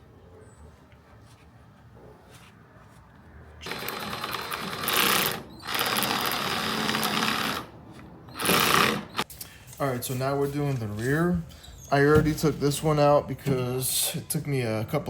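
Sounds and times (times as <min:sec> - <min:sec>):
power drill running: 0:03.6 - 0:07.7, 0:08.3 - 0:09.2.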